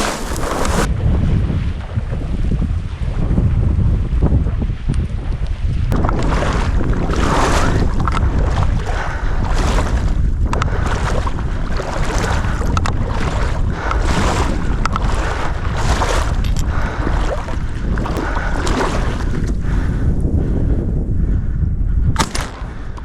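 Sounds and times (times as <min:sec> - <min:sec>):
wind buffeting microphone: 0:00.0 - 0:23.0.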